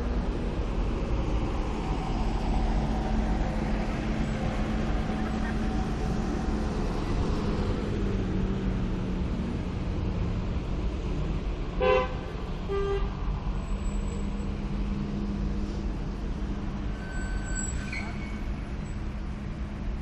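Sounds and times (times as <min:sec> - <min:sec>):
road traffic rumble: 0:00.0 - 0:20.0
car horn toot: 0:11.8 - 0:13.1.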